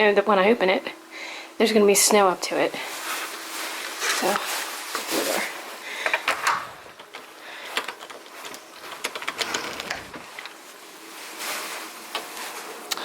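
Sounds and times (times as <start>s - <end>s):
light rustle: 7.1s - 13.0s.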